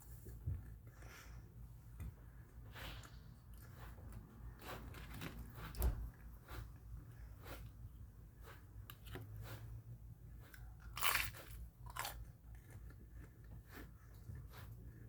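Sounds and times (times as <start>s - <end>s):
crunchy chewing: 10.4s - 15.0s.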